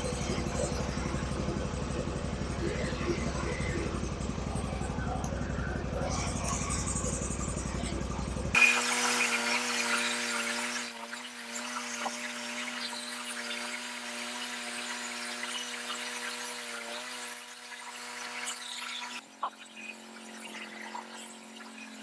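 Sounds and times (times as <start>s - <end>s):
sawmill engine running: 0.0s - 19.4s
saw blade hissing through log: 8.6s - 17.4s.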